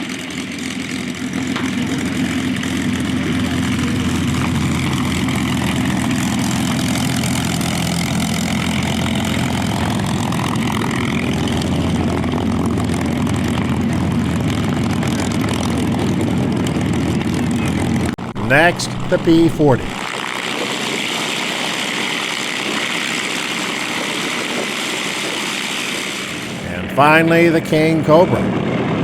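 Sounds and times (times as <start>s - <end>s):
propeller aircraft engine drone: 0.0s - 29.0s.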